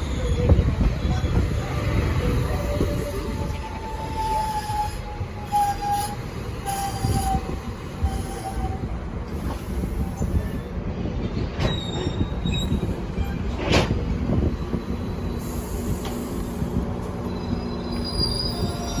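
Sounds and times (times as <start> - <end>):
train rumbling into station: 0.0 - 19.0
high-pitched wheel squeals: 2.6 - 10.4, 11.7 - 13.6, 17.2 - 19.0.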